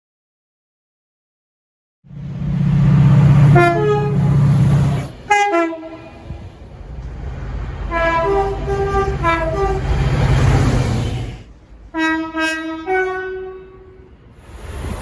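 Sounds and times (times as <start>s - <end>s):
heavy train rumble: 2.1s - 15.0s
train two-tone horn: 3.2s - 6.5s, 7.8s - 14.2s.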